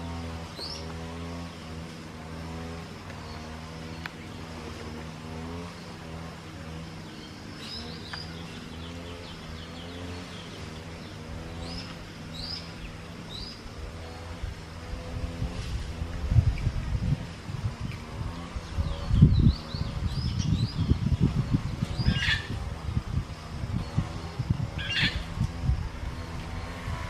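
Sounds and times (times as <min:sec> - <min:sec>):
low engine-like drone: 0:00.0 - 0:27.0
high bird chirps: 0:21.9 - 0:22.6, 0:24.8 - 0:25.3.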